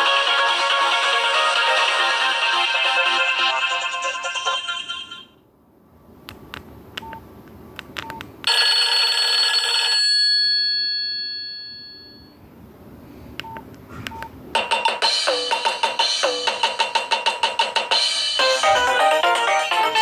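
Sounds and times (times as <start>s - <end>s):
polyphonic ringtone: 1.1s - 5.4s, 8.5s - 12.4s, 14.6s - 17.1s, 18.3s - 20.0s
bright chime-like tone: 10.6s - 12.4s.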